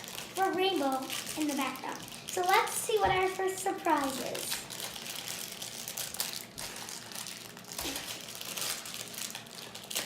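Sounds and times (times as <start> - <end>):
plastic packaging crinkling: 0.0 - 10.0.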